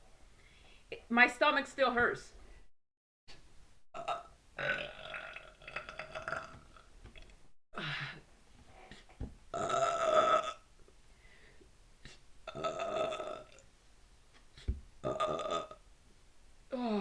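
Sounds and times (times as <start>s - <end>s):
woman belching: 4.0s - 6.9s, 9.5s - 10.7s, 12.5s - 13.6s, 15.0s - 15.8s.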